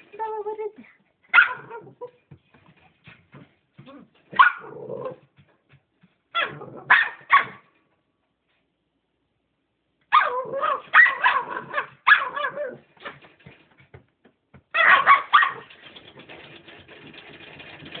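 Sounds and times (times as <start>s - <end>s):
puppy barking: 1.3s - 2.0s, 4.3s - 5.2s, 6.4s - 7.7s, 10.1s - 12.8s, 14.8s - 15.7s
fast rasping clicking: 15.4s - 18.0s.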